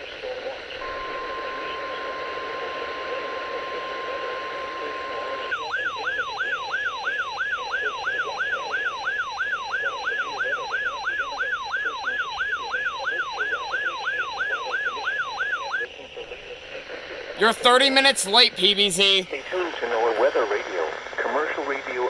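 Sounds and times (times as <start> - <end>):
faint radio hiss: 0.0 - 22.0
warbling siren alarm: 0.8 - 16.0.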